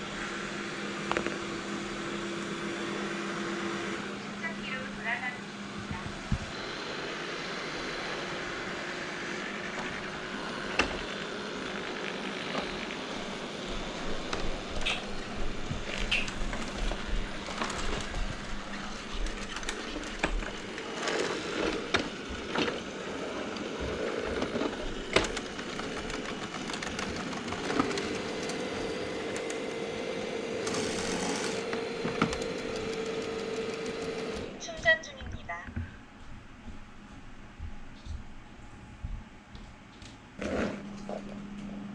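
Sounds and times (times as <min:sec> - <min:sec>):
robot vacuum whirring: 0:05.9 - 0:34.8.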